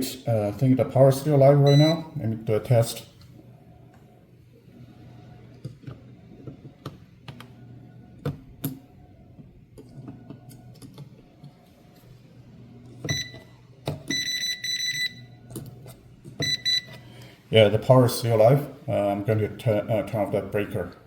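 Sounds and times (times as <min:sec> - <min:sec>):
voltage tester beeping: 0:01.6 - 0:02.2, 0:13.1 - 0:13.4, 0:14.1 - 0:15.3, 0:16.4 - 0:17.0.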